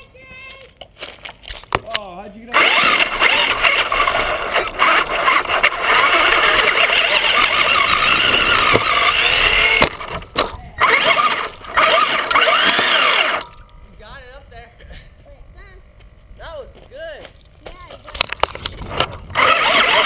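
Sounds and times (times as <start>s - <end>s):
toy car motor whining: 2.5s - 13.6s, 18.5s - 20.0s.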